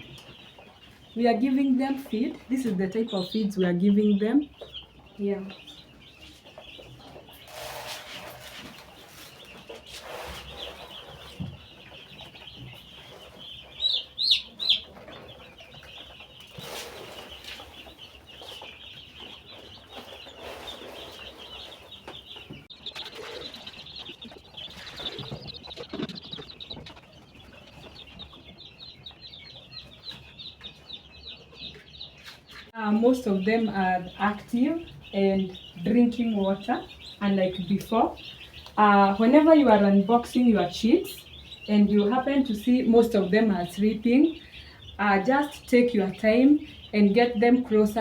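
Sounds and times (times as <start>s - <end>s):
chicks peeping: 0.0s - 48.0s
rustling: 7.3s - 13.8s, 14.8s - 23.9s.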